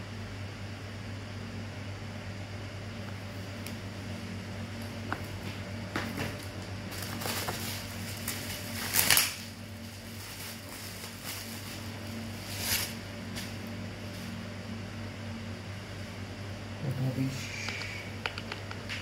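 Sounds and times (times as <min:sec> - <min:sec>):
steady low hum: 0:00.0 - 0:19.0
items being handled: 0:05.1 - 0:13.6.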